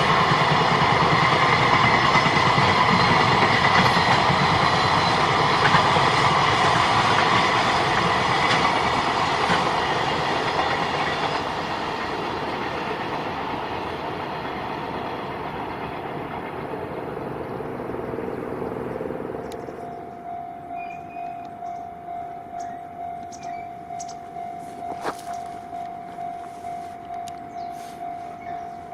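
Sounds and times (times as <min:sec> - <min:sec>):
freight train rolling on rails: 0:00.0 - 0:28.9
level crossing bell ringing: 0:19.9 - 0:28.9.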